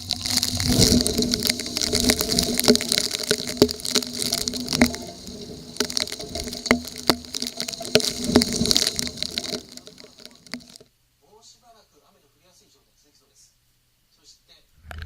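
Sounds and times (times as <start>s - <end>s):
heavy rain: 0.0s - 10.8s
raindrops tapping close by: 0.0s - 10.9s.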